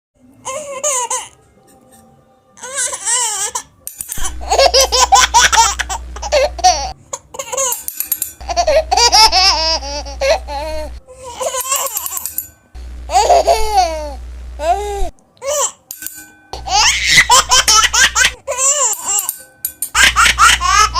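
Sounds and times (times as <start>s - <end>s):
music: 0.2s - 13.3s, 15.2s - 20.9s
baby laughing and giggling: 2.6s - 12.2s, 13.1s - 15.8s, 16.6s - 19.4s, 20.0s - 20.9s.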